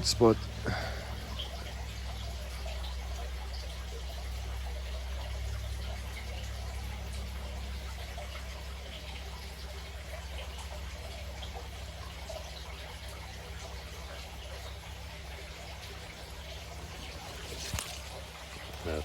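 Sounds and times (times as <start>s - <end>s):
steady low hum: 0.0s - 19.0s
water trickling: 0.0s - 19.0s.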